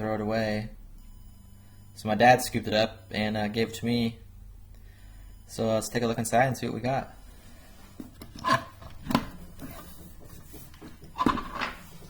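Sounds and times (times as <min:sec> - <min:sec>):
box rubs and knocks: 0:08.0 - 0:12.0.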